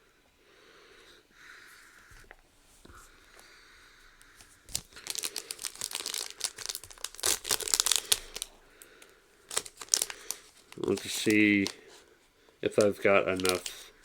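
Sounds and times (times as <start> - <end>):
foil wrapper crinkling and tearing: 4.4 - 11.8, 12.6 - 14.0.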